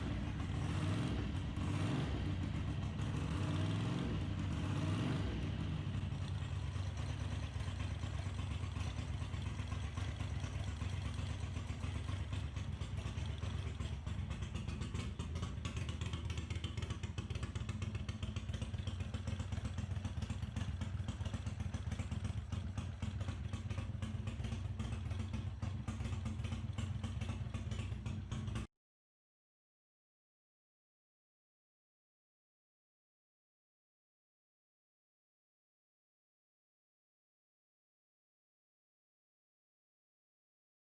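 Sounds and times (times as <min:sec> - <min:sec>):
engine mechanical clatter: 0:00.0 - 0:28.7
motorcycle engine idling: 0:00.0 - 0:28.7.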